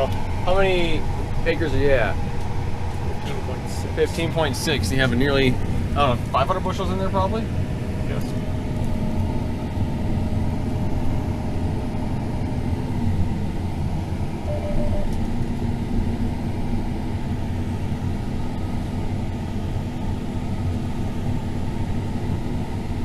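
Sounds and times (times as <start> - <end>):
combine harvester droning: 0.0 - 23.0
faint steady tone: 14.4 - 15.2.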